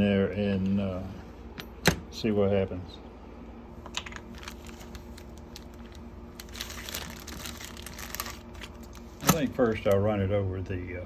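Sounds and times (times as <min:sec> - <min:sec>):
faint steady hum: 0:00.0 - 0:11.0
plastic pouch crinkling: 0:03.9 - 0:09.6.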